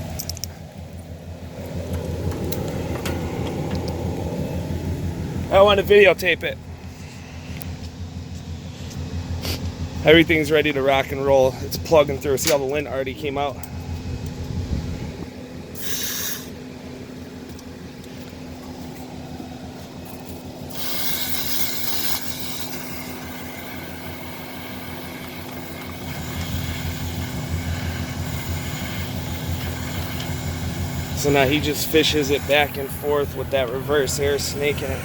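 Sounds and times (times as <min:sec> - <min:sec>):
leaf blower running: 0:01.2 - 0:06.0, 0:06.7 - 0:10.4, 0:18.2 - 0:35.0
air rushing hiss: 0:14.6 - 0:16.6, 0:20.6 - 0:25.2.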